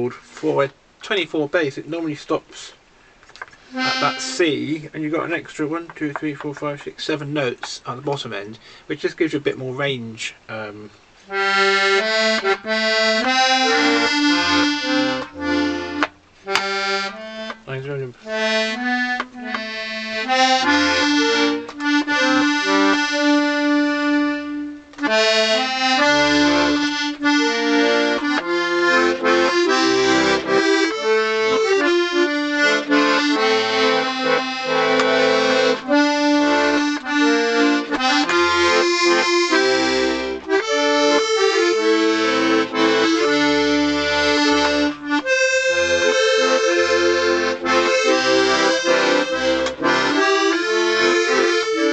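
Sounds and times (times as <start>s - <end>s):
accordion playing melody: 3.4s - 7.5s, 11.2s - 51.9s.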